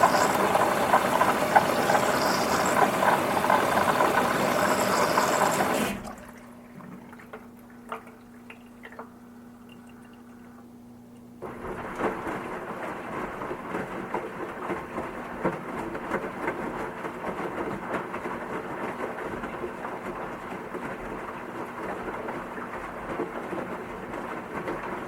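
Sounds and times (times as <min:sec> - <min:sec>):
water sloshing and splashing: 0:00.0 - 0:10.6
washing machine hum: 0:00.0 - 0:25.0.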